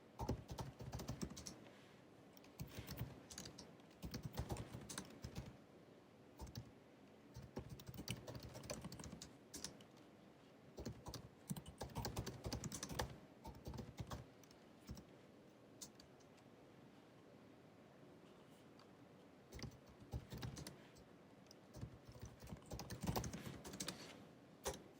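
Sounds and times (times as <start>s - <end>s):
laptop keyboard typing: 0.2s - 1.6s, 2.4s - 5.6s, 6.4s - 6.7s, 7.4s - 9.9s, 10.8s - 15.1s, 19.5s - 20.8s, 21.7s - 24.9s.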